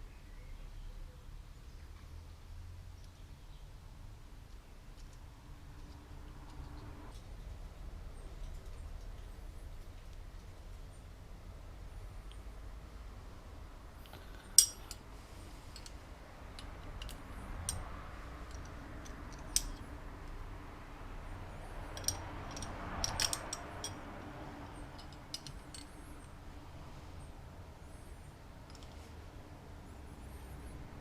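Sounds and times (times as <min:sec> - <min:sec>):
metal tools clinking: 0:14.3 - 0:15.0, 0:15.7 - 0:19.9, 0:21.8 - 0:24.0, 0:24.6 - 0:26.3.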